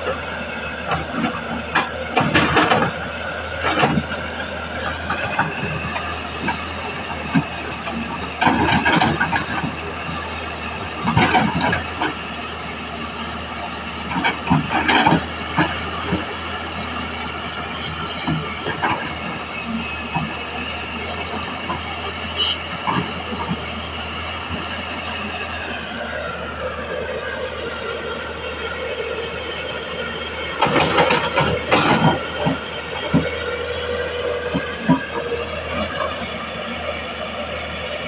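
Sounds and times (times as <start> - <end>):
excavator engine and hydraulics whining: 0.0 - 38.0
excavator bucket clanking: 0.9 - 3.0, 7.3 - 9.8, 11.0 - 12.2, 14.0 - 19.2, 30.6 - 33.4.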